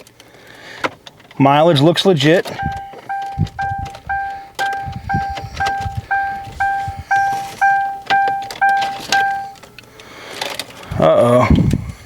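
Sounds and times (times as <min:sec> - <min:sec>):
car warning chime dinging: 0:02.4 - 0:09.8.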